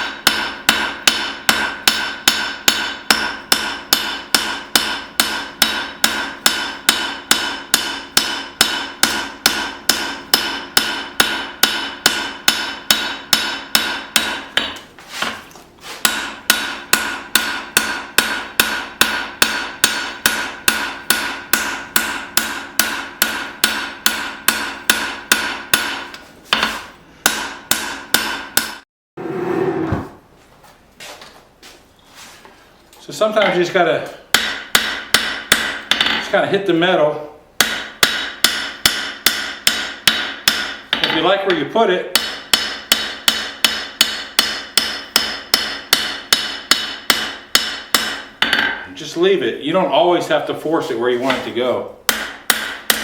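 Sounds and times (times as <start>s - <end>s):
hammer ringing on anvil: 0.0s - 14.7s, 16.0s - 28.8s, 42.1s - 48.8s.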